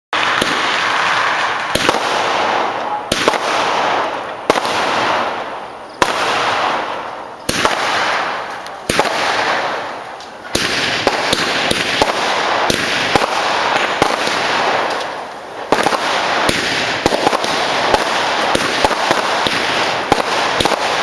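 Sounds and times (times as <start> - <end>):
fireworks bangs with hiss: 0.1 - 21.0.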